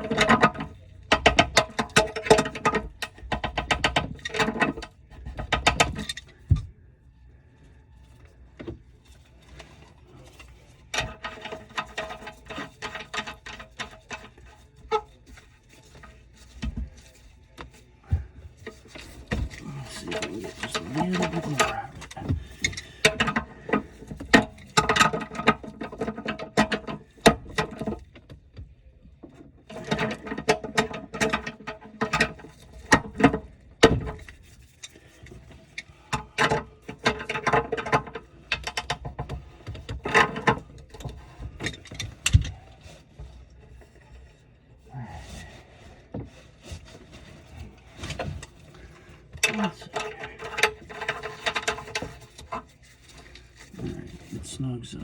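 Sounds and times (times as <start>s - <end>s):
plastic fittings clicking and knocking: 0.0s - 6.7s, 8.0s - 44.6s, 45.2s - 54.4s
plastic squeaking on plastic: 9.4s - 28.1s.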